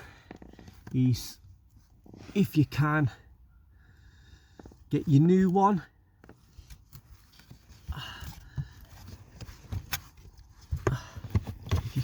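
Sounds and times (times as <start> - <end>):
filter rustling: 6.1 - 12.0.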